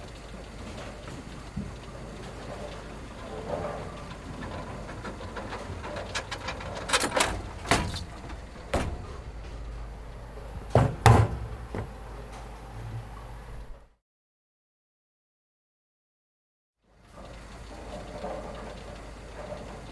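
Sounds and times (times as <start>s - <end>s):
steady low hum: 0.0s - 13.9s
sharp knocks and thumps: 4.4s - 9.8s, 10.5s - 12.1s.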